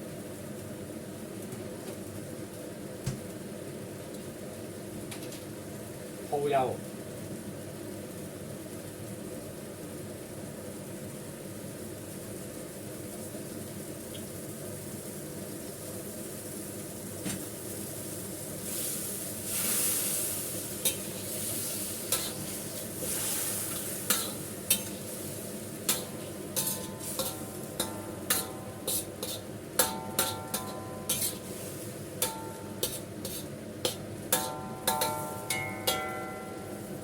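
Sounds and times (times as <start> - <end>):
steady sizzle: 0.0 - 37.0
metal spatula stirring in a pan: 18.6 - 37.0
spatula knocking against pan: 25.9 - 31.4, 32.2 - 36.4.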